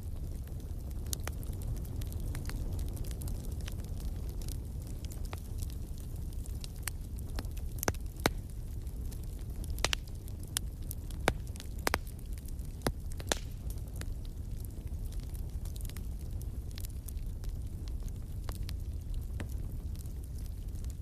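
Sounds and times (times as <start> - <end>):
low rumble of flames: 0.0 - 21.0
wood fire crackling: 0.0 - 21.0.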